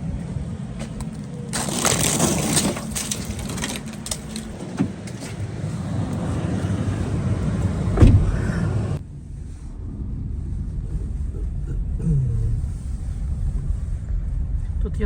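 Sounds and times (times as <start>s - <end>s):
vehicle engine idling: 0.0s - 15.0s
loud crunching and scraping: 0.3s - 6.5s
single thump: 8.0s - 8.4s.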